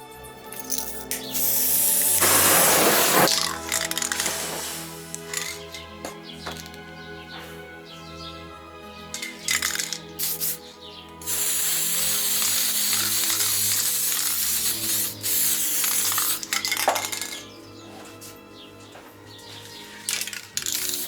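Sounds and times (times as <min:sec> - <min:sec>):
background music: 0:00.0 - 0:21.0
spray paint can spraying: 0:00.5 - 0:05.8, 0:09.2 - 0:10.6, 0:11.2 - 0:17.4, 0:20.0 - 0:21.0.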